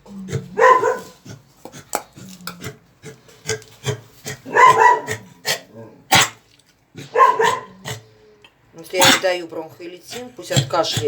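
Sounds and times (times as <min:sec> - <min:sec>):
dog barking: 0:00.5 - 0:01.2, 0:04.4 - 0:06.4, 0:07.0 - 0:07.9.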